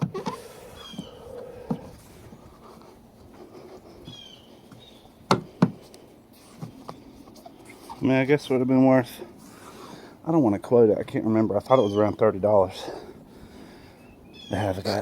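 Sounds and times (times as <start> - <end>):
small bird chirping: 0.6 - 1.9, 4.1 - 5.2
sharp knocks: 5.3 - 5.8.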